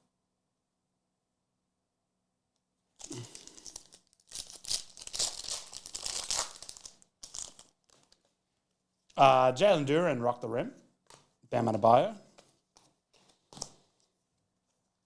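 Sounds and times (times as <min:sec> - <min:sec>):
card pack wrapper tearing: 0:03.0 - 0:08.2.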